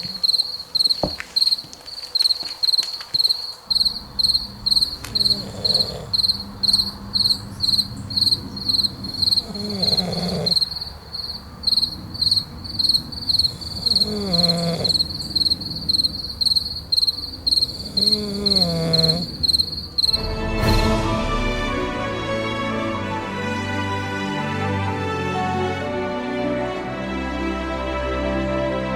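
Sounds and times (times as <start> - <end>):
cricket chirping: 0.0 - 20.3.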